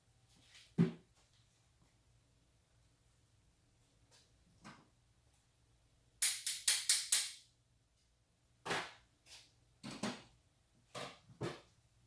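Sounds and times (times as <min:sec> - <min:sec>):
sharp clacks: 0:06.2 - 0:07.4.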